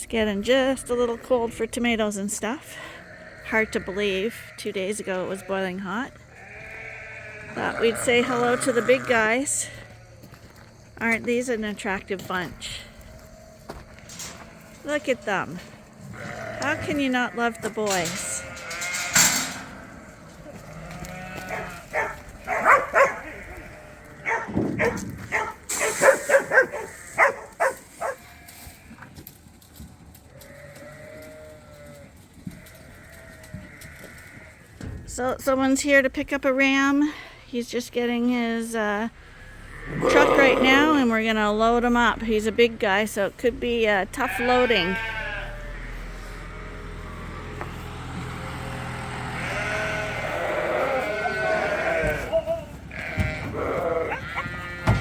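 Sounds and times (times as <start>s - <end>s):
rams bleating: 2.4s - 10.4s, 11.0s - 29.1s, 30.3s - 34.8s, 39.2s - 55.0s
low engine hum: 45.0s - 53.2s.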